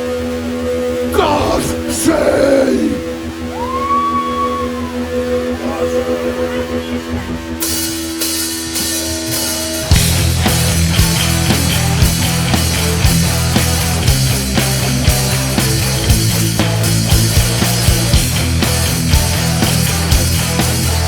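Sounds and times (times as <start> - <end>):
rock band playing: 9.7 - 21.0.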